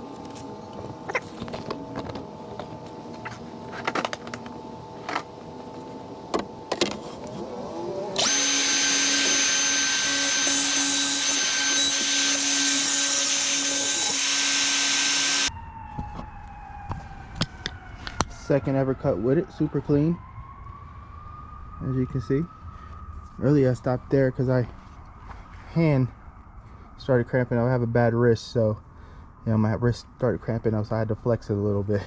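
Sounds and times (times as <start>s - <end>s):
circular saw cutting panel: 7.1s - 15.5s
saw blade spinning down: 7.4s - 15.5s.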